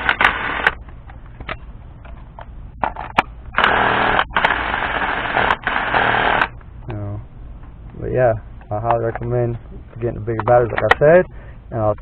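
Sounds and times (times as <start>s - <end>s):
cordless impact driver running: 0.0s - 0.8s, 3.6s - 6.5s.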